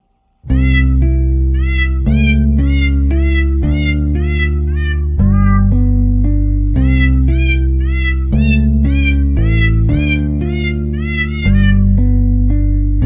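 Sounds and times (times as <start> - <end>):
bass line music: 0.5 - 13.0
meow-like call in music: 0.6 - 1.0, 1.6 - 5.7, 6.8 - 12.0.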